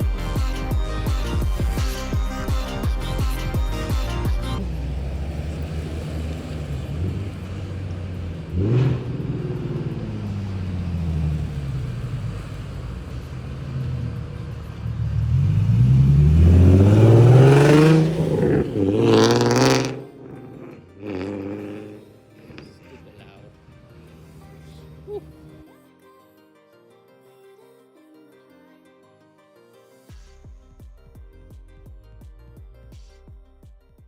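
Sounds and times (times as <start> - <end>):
car engine revving: 0.0 - 25.6.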